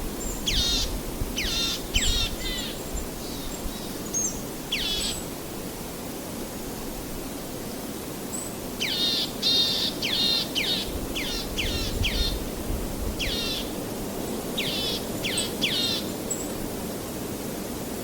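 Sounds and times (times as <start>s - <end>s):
songbird calling: 0.2s - 5.3s, 8.3s - 12.5s, 13.2s - 13.8s, 14.6s - 16.5s.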